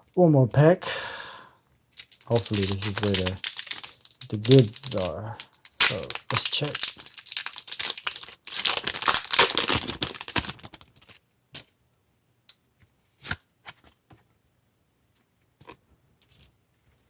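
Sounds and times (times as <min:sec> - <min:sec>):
foil wrapper tearing and crinkling: 0:02.0 - 0:11.2
cards clicking and rustling: 0:02.0 - 0:11.7.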